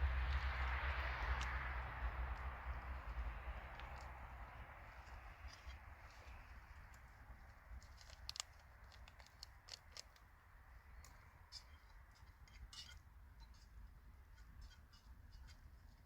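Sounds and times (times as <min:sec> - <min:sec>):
campfire crackling: 0:00.0 - 0:11.7.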